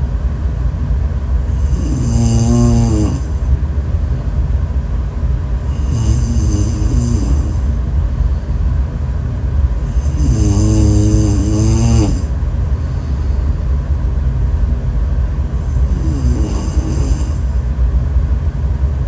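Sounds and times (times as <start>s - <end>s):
steady low rumble: 0.0s - 19.0s
person snoring: 1.5s - 3.4s, 5.7s - 7.8s, 9.8s - 13.3s, 15.6s - 17.5s.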